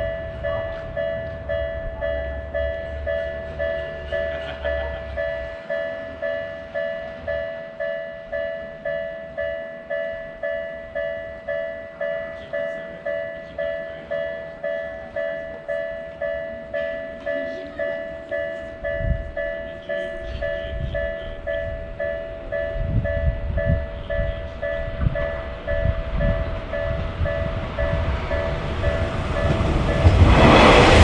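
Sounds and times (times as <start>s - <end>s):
railroad crossing warning bell: 0.0s - 31.0s
low rumble: 21.7s - 31.0s.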